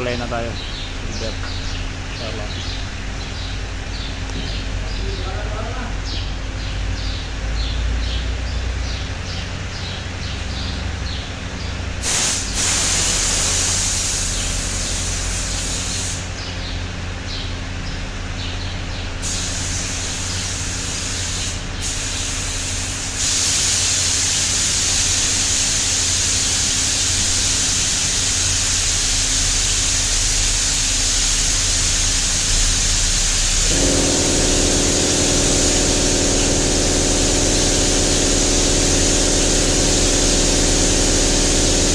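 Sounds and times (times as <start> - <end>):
paint spray gun hissing: 12.0 - 16.4, 19.2 - 41.9
motor running: 23.9 - 41.9
steady low hum: 28.6 - 41.9.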